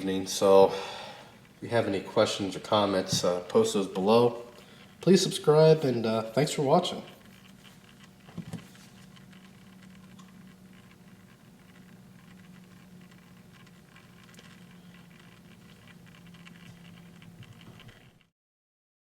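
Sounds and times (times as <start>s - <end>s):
light taps and scratches: 6.8s - 18.2s.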